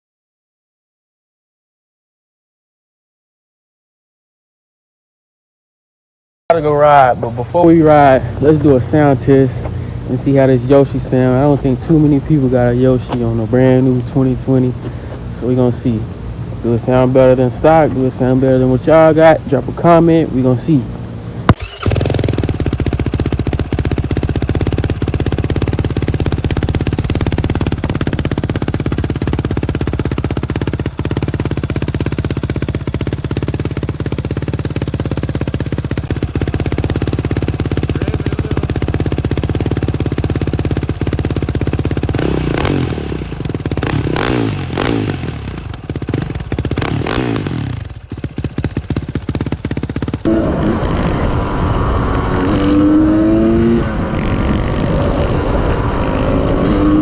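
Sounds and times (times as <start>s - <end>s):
engine idling and revving: 6.5s - 57.0s
rising engine note: 50.2s - 57.0s.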